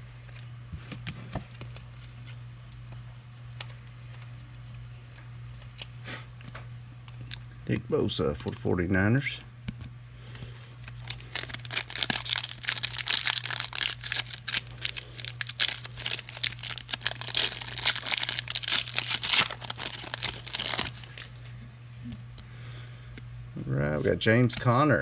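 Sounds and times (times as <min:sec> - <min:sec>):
foil wrapper crinkling and tearing: 0:10.9 - 0:21.4.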